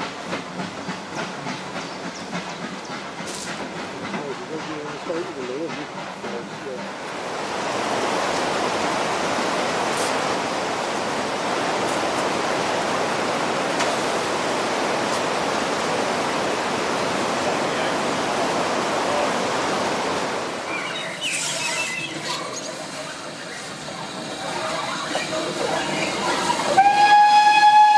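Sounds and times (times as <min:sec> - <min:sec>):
steam locomotive hissing steam: 0:00.0 - 0:07.1, 0:20.7 - 0:27.9.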